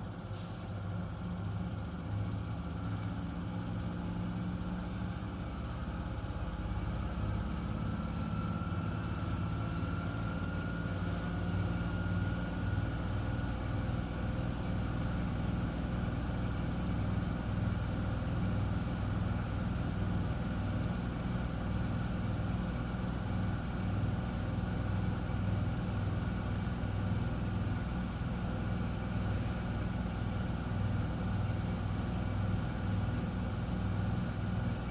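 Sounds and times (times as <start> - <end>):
faint motor whine: 0.0 - 34.9
washing machine spinning: 1.4 - 34.9.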